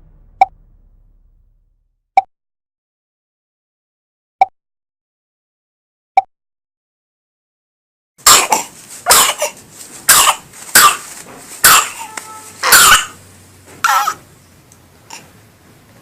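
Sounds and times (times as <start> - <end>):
baby coughing: 8.2 - 13.2, 13.8 - 14.2.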